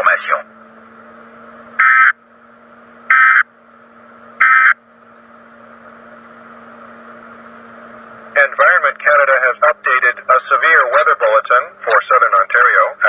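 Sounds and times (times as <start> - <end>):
radio hiss: 0.0 - 0.5, 4.4 - 4.8, 8.3 - 13.0
low hum: 0.0 - 13.0
digital data burst screeches: 4.4 - 4.8.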